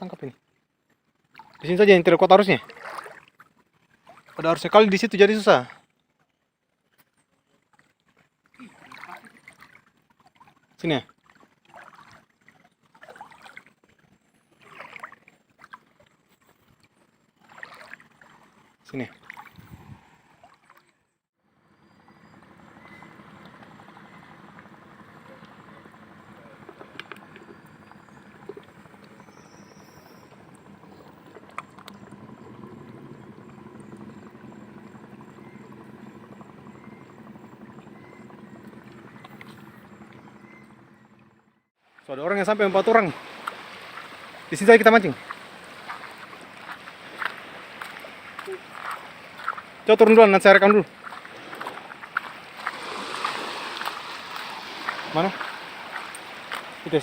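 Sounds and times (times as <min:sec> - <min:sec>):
water sloshing and splashing: 0:00.0 - 0:06.4, 0:07.5 - 0:21.2, 0:22.6 - 0:57.0
low engine drone: 0:21.5 - 0:57.0.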